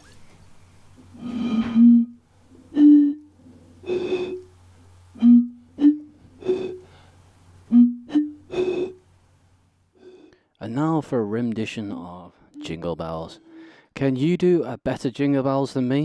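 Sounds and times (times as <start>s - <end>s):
blown bottle notes: 1.0s - 9.1s.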